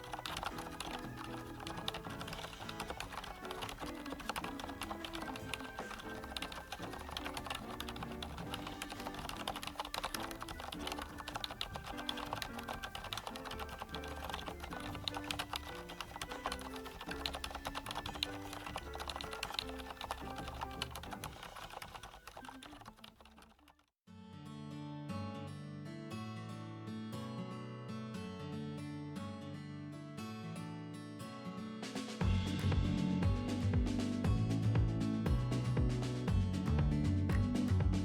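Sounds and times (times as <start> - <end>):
background music: 0.0 - 22.9, 32.2 - 38.0
rapid mechanical keyboard typing: 0.0 - 23.8.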